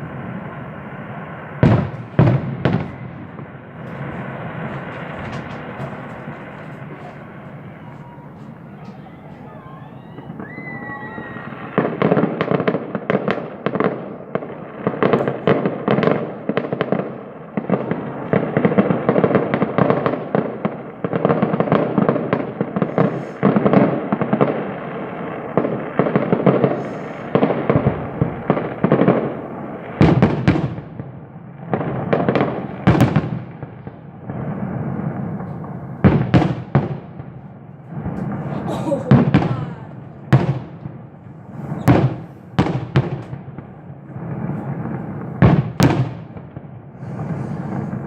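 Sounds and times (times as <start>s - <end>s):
fireworks bangs and crackling: 0.0s - 48.0s
sharp single firework reports: 0.0s - 48.0s.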